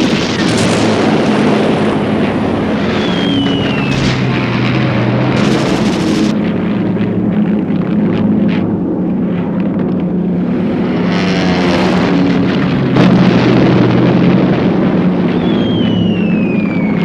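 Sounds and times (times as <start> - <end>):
sharp bang: 0.0 - 6.7
explosion: 0.0 - 6.8
plane rushing past: 0.0 - 17.0
propeller aircraft engine drone: 0.0 - 17.0
falling whistle: 1.1 - 6.3, 15.2 - 17.0.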